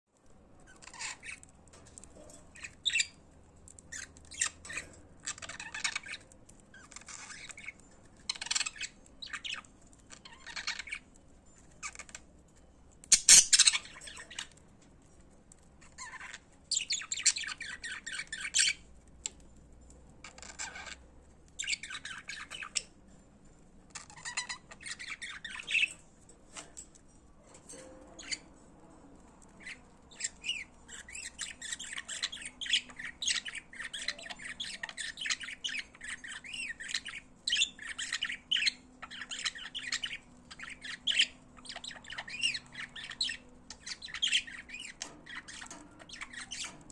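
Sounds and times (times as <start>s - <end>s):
budgerigars chattering: 13.1s - 14.5s, 29.6s - 46.9s.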